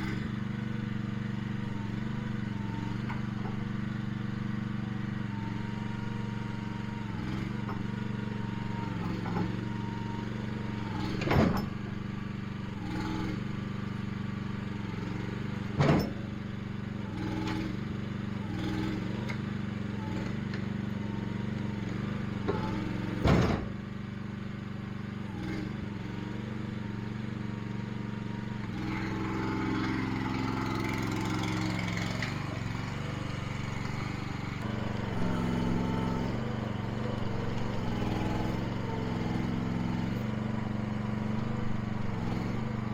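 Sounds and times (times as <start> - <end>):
small gasoline engine running: 0.0 - 42.9.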